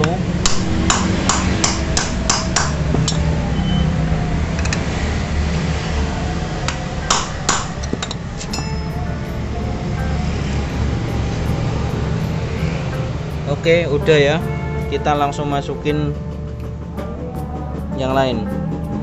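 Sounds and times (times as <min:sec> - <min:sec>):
steady low hum: 0:00.0 - 0:19.0
hammer striking metal socket: 0:07.1 - 0:08.7.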